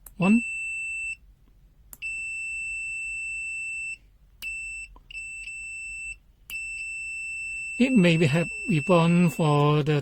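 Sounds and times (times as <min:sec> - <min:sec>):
multimeter continuity beeping: 0:02.0 - 0:10.0.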